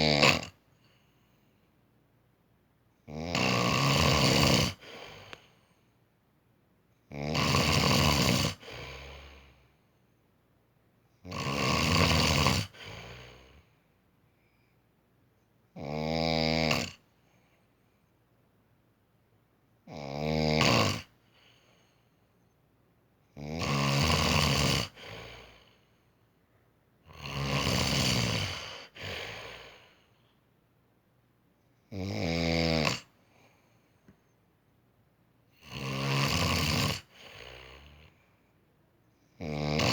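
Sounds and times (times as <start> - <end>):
person snoring loudly: 0.0 - 0.6, 3.1 - 5.3, 7.1 - 9.4, 11.2 - 13.5, 15.8 - 17.0, 19.9 - 21.1, 23.4 - 25.6, 27.1 - 29.8, 31.9 - 33.1, 35.6 - 38.1, 39.4 - 39.9.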